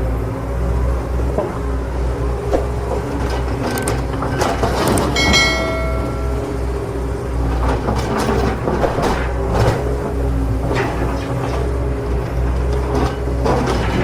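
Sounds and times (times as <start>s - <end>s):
ringing metallic clink: 5.2s - 6.9s.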